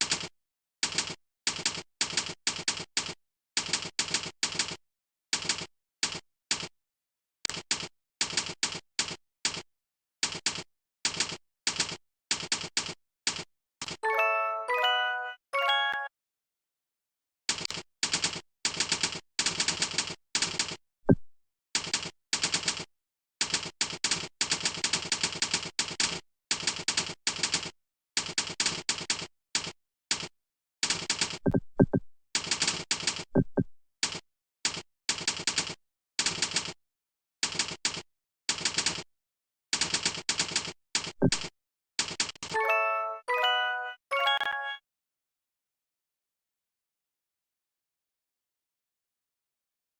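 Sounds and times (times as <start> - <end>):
keyboard typing clicks: 39.8 - 42.7.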